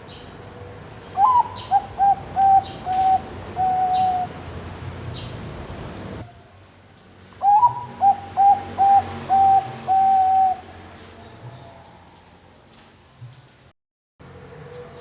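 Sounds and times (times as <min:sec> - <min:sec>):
dove cooing: 0:01.2 - 0:04.4, 0:07.4 - 0:10.8.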